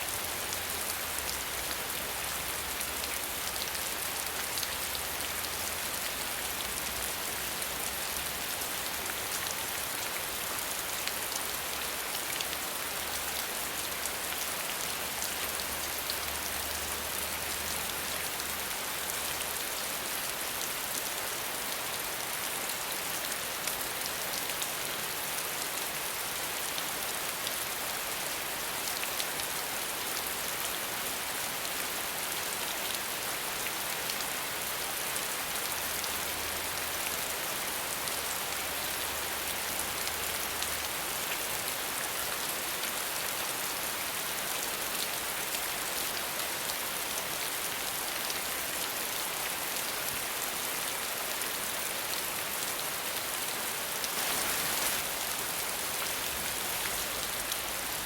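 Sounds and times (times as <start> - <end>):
steady rain hiss: 0.0 - 58.0
raindrops pattering: 54.0 - 58.0.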